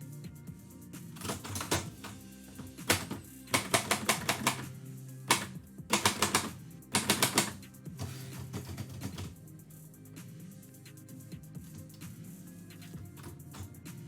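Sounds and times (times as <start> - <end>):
background music with low notes: 0.0 - 14.0
typewriter keys clacking: 1.2 - 4.6, 5.3 - 9.3.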